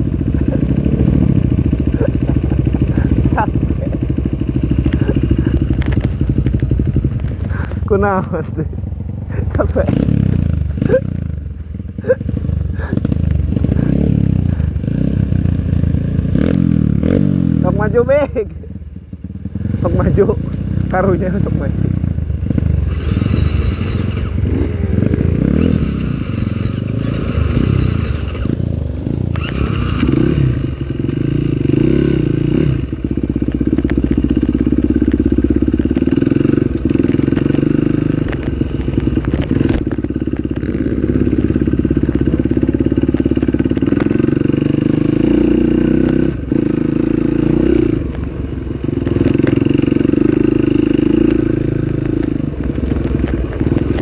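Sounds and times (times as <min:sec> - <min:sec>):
dirt bike engine revving: 0:00.0 - 0:54.0.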